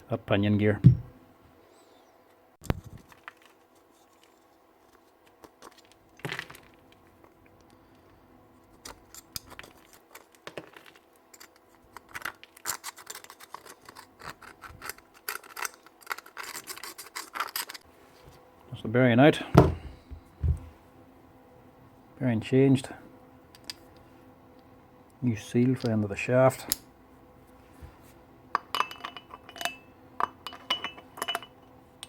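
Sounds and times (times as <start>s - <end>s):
hand tools clicking and scraping metal: 8.8s - 17.9s.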